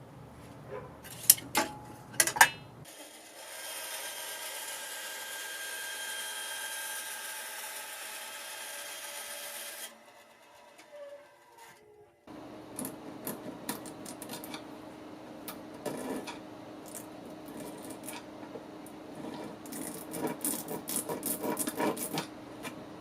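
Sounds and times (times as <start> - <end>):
steady low hum: 12.3 - 23.0.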